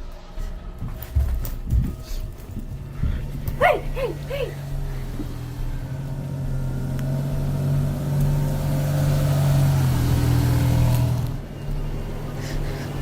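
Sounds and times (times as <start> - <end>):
car engine running: 2.8 - 13.0.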